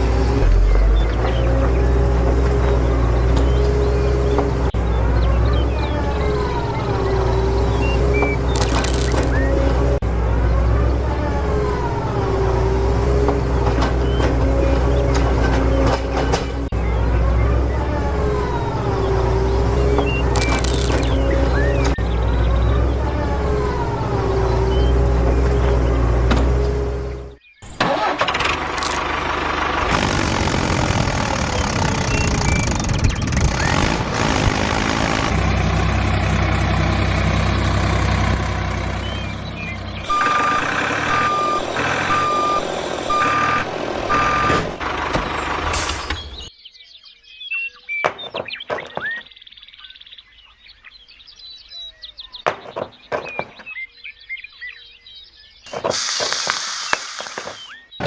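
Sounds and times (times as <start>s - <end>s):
heavy vehicle engine rumble: 0.0s - 46.5s
reversing alarm beeping: 35.4s - 44.8s.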